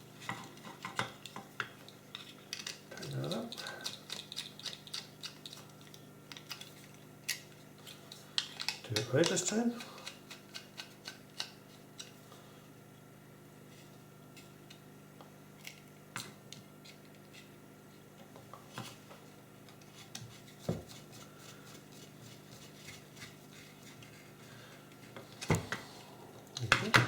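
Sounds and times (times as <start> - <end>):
steady low hum: 19.0 - 27.0.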